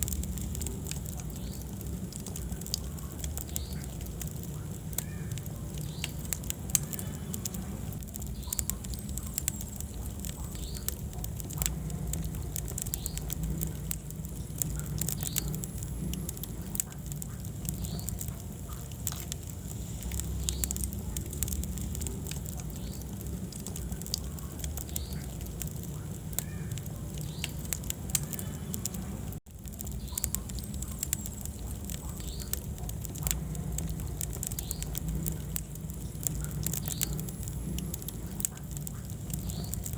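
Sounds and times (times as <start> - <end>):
low rumble of flames: 0.0 - 39.9
wood fire crackling and popping: 0.0 - 39.9.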